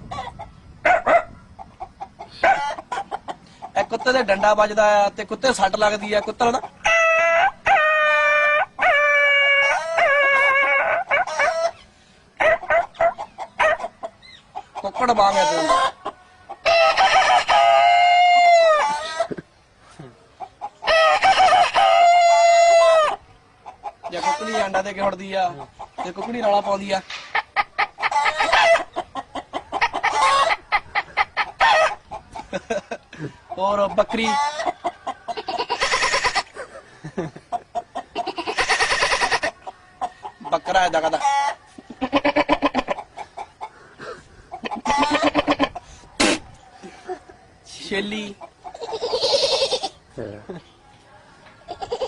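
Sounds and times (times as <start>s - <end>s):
man imitating dog yelping: 2.4s - 2.8s, 12.4s - 13.9s
person imitating hen cackling: 6.1s - 11.8s, 14.7s - 23.2s, 23.8s - 24.8s, 27.4s - 36.6s, 37.5s - 40.1s, 41.0s - 43.7s, 44.5s - 46.6s, 48.4s - 50.0s, 51.6s - 52.0s.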